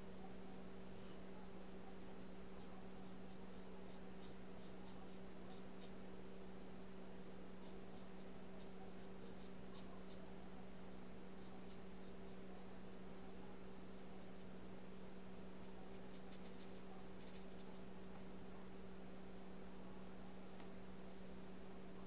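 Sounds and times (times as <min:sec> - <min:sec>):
steady low hum: 0:00.0 - 0:22.0
paintbrush strokes on paper: 0:07.6 - 0:18.2, 0:20.2 - 0:21.5.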